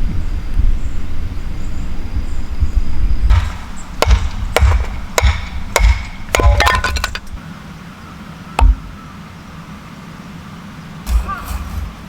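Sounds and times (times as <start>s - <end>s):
sharp knocks: 3.3s - 7.4s, 8.6s - 9.0s.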